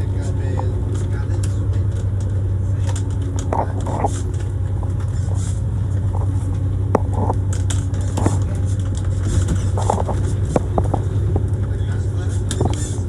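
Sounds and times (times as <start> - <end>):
engine and road drone: 0.0 - 13.0.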